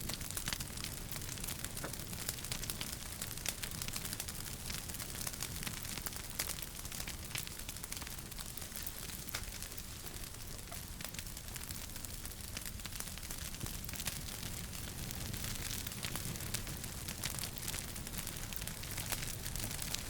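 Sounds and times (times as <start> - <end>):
low rumble of flames: 0.0 - 20.0
wood fire crackling and popping: 0.0 - 20.0.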